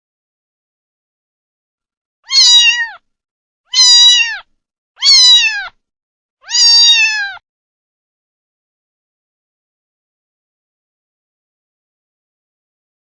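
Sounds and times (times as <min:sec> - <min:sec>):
kitten meowing: 0:02.3 - 0:03.0, 0:03.7 - 0:05.8, 0:06.4 - 0:07.4.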